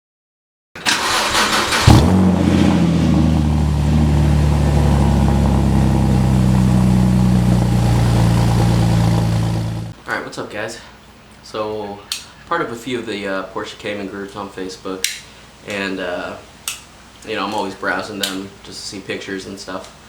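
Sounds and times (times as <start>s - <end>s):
car engine cranking and starting: 0.8s - 10.0s
car engine idling: 0.8s - 10.0s.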